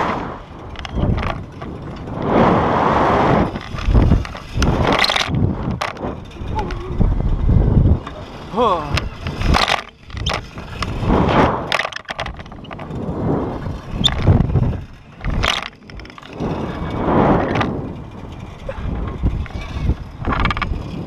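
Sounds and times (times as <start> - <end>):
sharp clicks and knocks: 0.7 - 2.1, 3.5 - 7.0, 8.9 - 11.0, 11.6 - 13.0, 13.8 - 16.8, 18.9 - 21.0
air rushing over microphone: 2.1 - 5.6.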